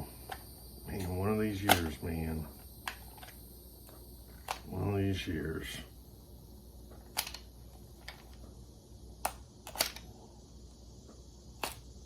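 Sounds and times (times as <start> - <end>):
cards and packaging clicking: 9.2 - 10.1.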